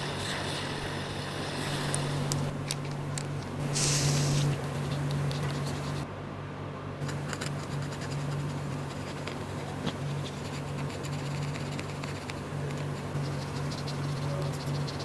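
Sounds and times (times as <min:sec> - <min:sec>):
hand tools scratching and clicking: 0:00.0 - 0:03.3
steady low hum: 0:00.0 - 0:15.0.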